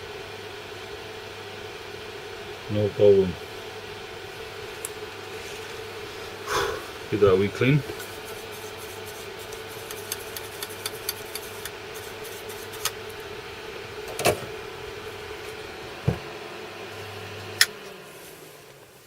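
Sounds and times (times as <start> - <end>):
extractor fan humming: 0.0 - 19.0
tools clicking and tapping: 9.8 - 11.7
thump: 16.0 - 16.2.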